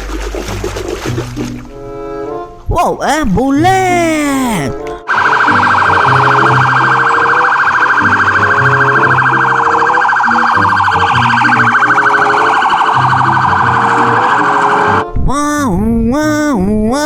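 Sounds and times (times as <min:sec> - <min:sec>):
ambulance siren warbling: 0:05.2 - 0:14.9.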